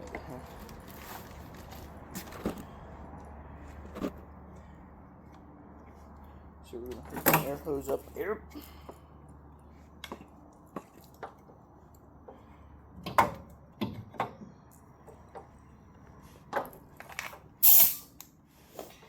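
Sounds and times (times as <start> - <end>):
short loud air hiss: 17.6 - 18.2.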